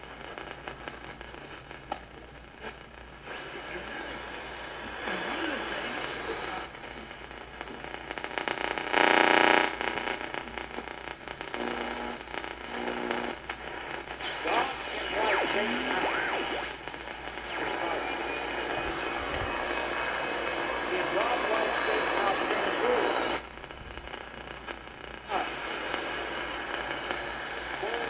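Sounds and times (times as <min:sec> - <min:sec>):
radio static hissing and crackling: 0:00.0 - 0:28.0
burst of radio noise: 0:02.6 - 0:28.0
radio whistles gliding in pitch: 0:14.2 - 0:23.4.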